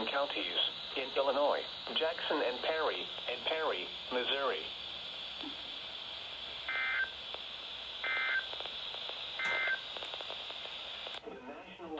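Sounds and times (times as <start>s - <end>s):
radio hiss: 0.0s - 11.9s.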